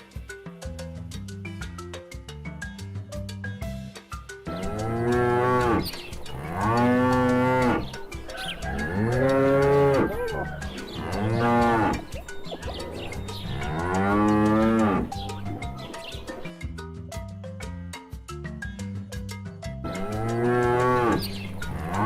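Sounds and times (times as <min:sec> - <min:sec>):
cow mooing: 0:04.5 - 0:12.2, 0:13.4 - 0:15.3, 0:19.9 - 0:22.0.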